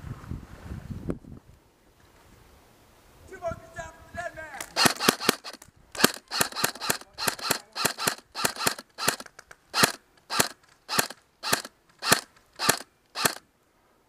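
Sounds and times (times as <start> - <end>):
airsoft gun shots: 4.6 - 13.4.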